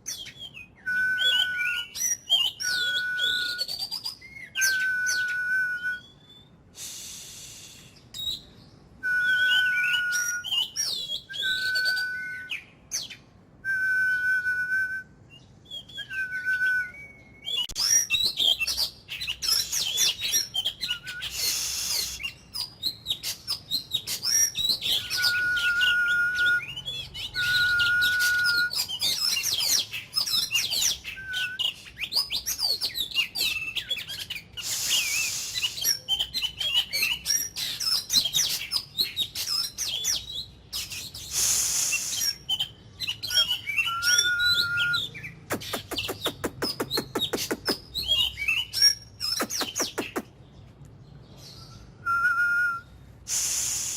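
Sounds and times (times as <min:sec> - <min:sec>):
bird singing: 0:00.0 - 0:06.6, 0:08.0 - 0:13.3, 0:15.0 - 0:52.9
brief hissing noise: 0:06.8 - 0:08.0, 0:21.3 - 0:22.3, 0:34.6 - 0:35.9, 0:41.3 - 0:42.4, 0:53.3 - 0:53.9.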